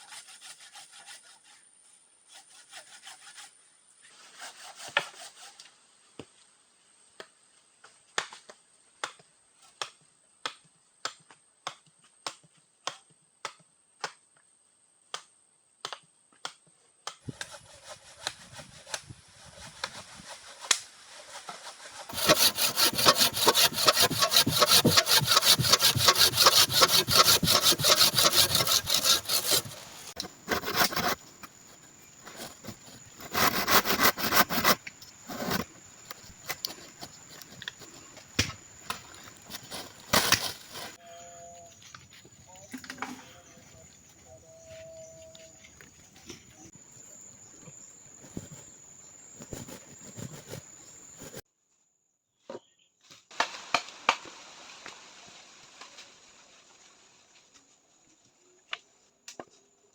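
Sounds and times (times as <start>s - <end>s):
hand saw cutting wood: 0.0s - 1.6s, 2.3s - 3.6s, 4.2s - 5.7s, 17.3s - 41.0s, 49.4s - 51.4s.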